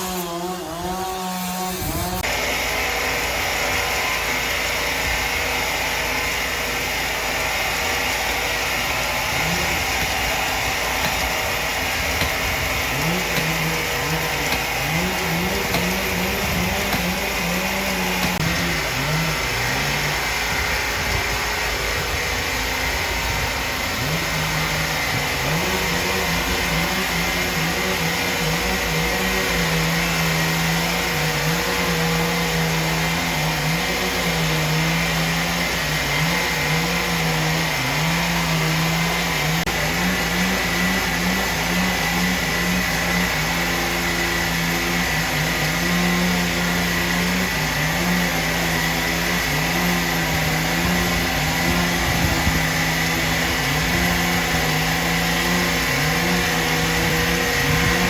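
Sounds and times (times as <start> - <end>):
machine engine humming: 0.0 - 58.0
high whine: 1.7 - 45.8.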